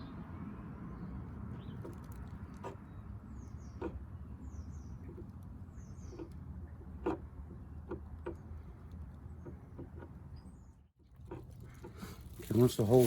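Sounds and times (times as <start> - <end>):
light ticks and scratches: 1.5 - 2.8, 11.1 - 13.0.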